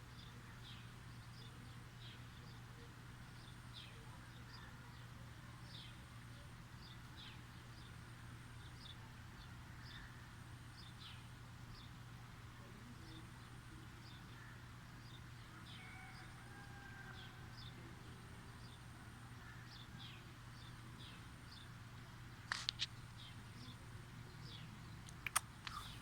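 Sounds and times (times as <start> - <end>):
low steady hum: 0.0 - 26.0
sharp clicks: 22.5 - 23.0, 25.0 - 25.9.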